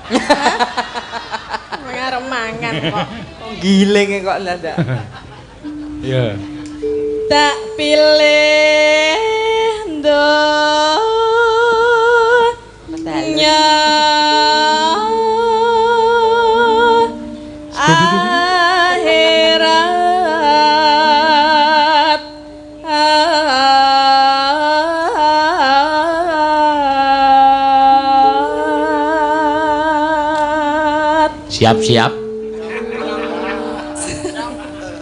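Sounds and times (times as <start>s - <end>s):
sustained instrumental notes: 0.0s - 35.0s
woman singing with vibrato: 6.8s - 31.5s, 32.4s - 35.0s.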